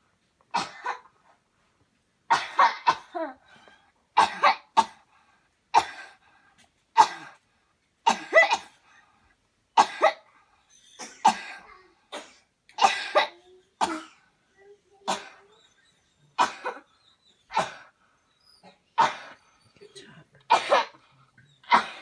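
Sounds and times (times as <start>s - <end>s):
person coughing deeply: 20.5s - 21.0s, 21.7s - 22.0s.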